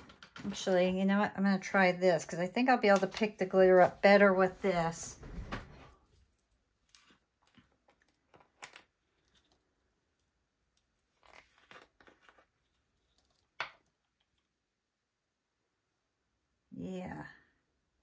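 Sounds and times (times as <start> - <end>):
taps and rustles of craft supplies: 2.8 - 6.0.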